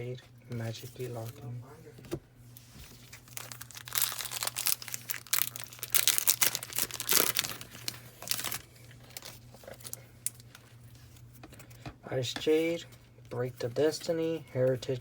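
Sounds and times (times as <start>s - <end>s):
foil wrapper crinkling and tearing: 3.0s - 10.6s.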